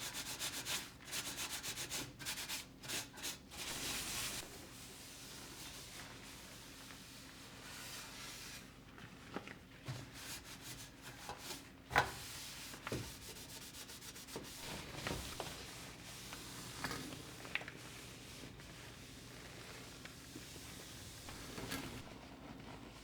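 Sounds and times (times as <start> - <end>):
objects rubbing and scraping: 3.6 - 4.6, 14.3 - 18.6.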